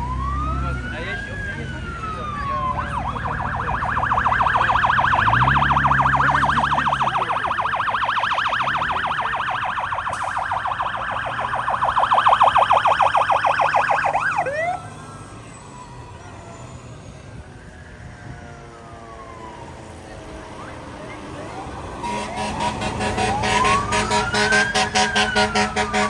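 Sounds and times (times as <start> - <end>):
truck diesel engine passing: 0.0 - 16.1, 19.2 - 26.0
electronic siren fast yelp: 2.0 - 14.9.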